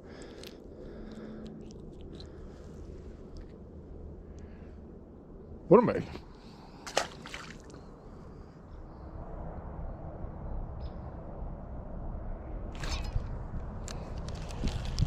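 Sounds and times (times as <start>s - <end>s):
low outdoor rush: 0.0s - 15.0s
fish splashing in water: 6.9s - 7.8s.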